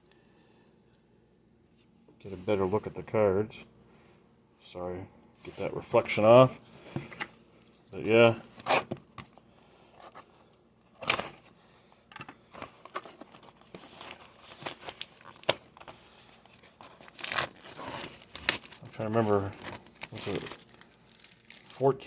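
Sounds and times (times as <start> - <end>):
packaging tearing and rustling: 12.6 - 22.0.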